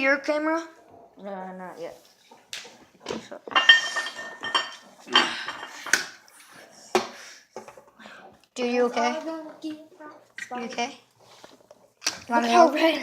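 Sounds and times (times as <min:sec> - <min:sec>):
metal utensil clinking: 0:03.5 - 0:05.8.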